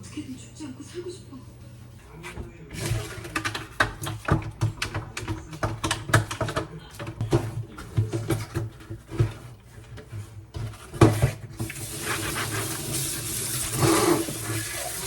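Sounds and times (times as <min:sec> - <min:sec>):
water running into sink: 0:11.6 - 0:15.0.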